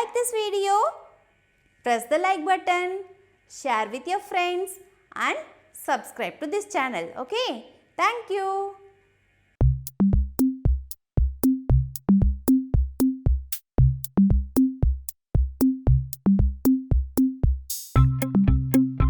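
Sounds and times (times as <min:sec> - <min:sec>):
drum-machine beat: 0:09.6 - 0:19.0
pitched bass-drum thuds: 0:09.6 - 0:19.0.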